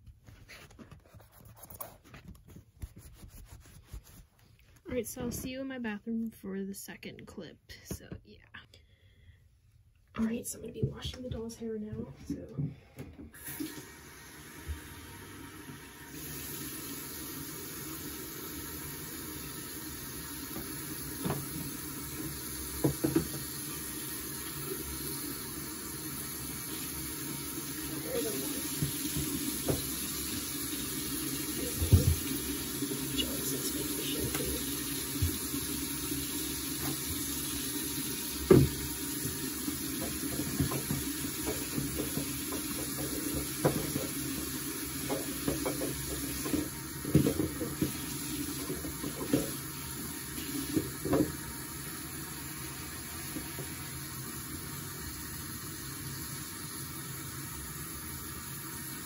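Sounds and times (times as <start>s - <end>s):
tap running into sink: 20.3s - 24.0s, 27.6s - 51.6s.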